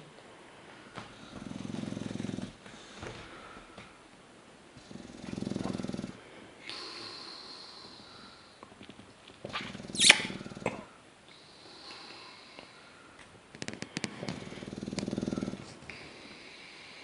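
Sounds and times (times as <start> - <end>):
dog snoring: 1.2 - 2.6, 4.8 - 7.5, 9.5 - 10.9, 14.0 - 16.5
breathy exhales: 6.2 - 8.6.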